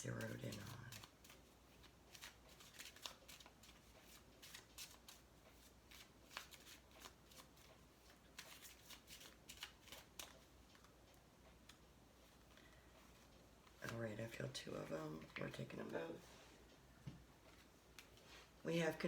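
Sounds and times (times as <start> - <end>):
cards being shuffled: 0.0 - 14.3.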